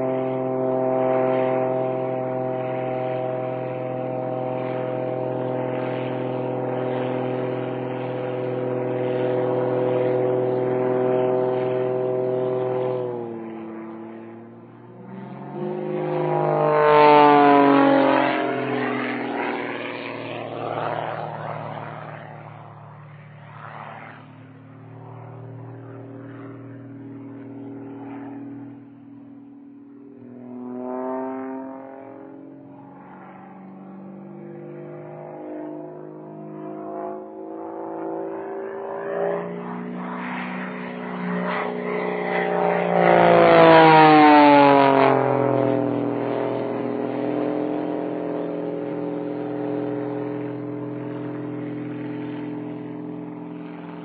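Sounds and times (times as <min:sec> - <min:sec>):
propeller plane engine: 0:00.0 - 0:54.0.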